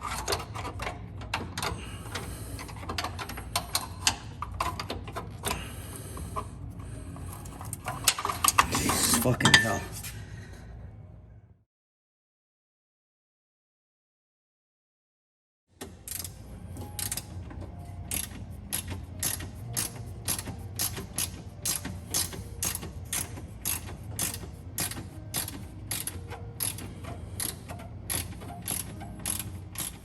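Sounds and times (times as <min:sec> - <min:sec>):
socket ratchet clicking: 0:18.1 - 0:30.0.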